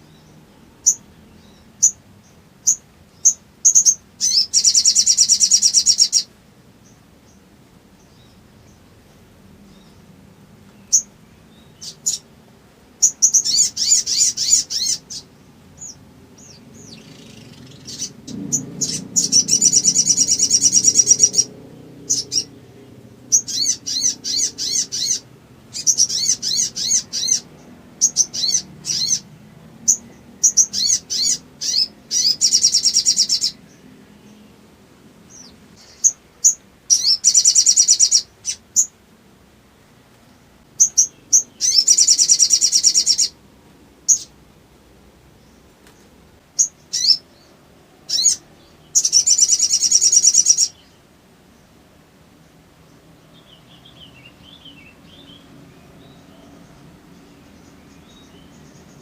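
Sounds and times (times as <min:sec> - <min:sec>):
bird chittering trills: 0:00.0 - 0:07.4, 0:10.8 - 0:12.3, 0:13.0 - 0:34.5, 0:35.3 - 0:39.0, 0:40.8 - 0:43.4, 0:44.1 - 0:44.3, 0:46.6 - 0:47.5, 0:48.1 - 0:51.0.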